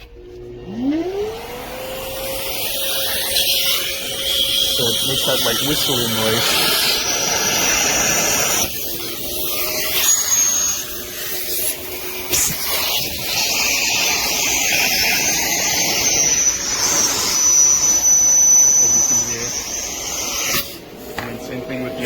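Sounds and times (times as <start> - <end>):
vacuum suction rushing: 1.0 - 22.0
high whistle from hose adapter: 15.8 - 20.8.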